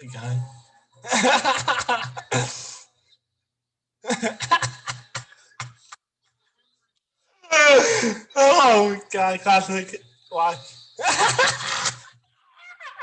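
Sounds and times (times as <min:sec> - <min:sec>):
person's voice in choppy bursts: 0:08.4 - 0:12.0.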